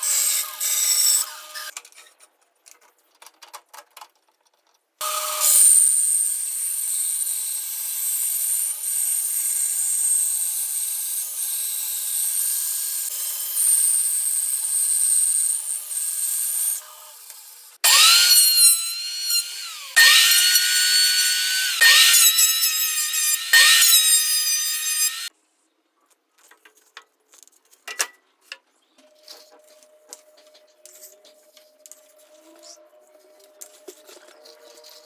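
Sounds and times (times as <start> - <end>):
power tool whining on wood: 0.0 - 1.7, 5.0 - 25.3.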